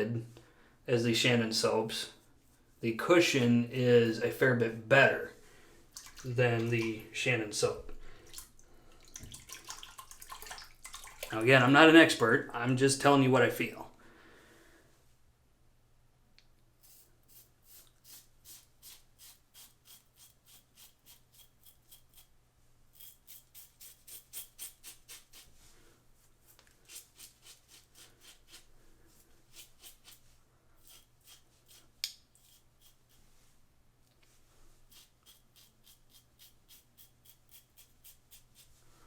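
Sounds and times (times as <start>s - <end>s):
razor scraping stubble: 16.8s - 22.3s, 22.9s - 25.6s, 26.3s - 33.2s, 34.8s - 38.8s.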